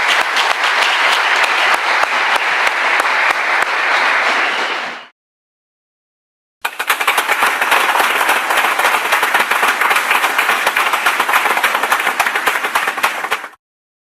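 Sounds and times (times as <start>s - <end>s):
audience applauding: 0.0s - 5.1s, 6.6s - 13.6s.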